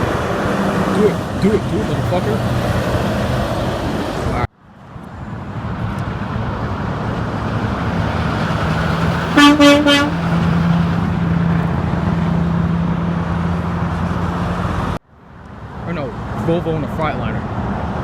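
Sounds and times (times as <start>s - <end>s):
highway traffic noise: 0.0s - 18.0s
truck engine drone: 0.0s - 18.0s
truck horn honk: 9.3s - 10.8s.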